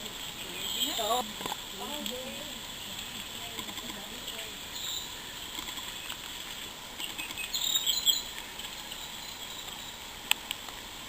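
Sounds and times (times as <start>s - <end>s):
steady outdoor hiss: 0.0s - 11.0s
high chirps: 7.0s - 8.3s.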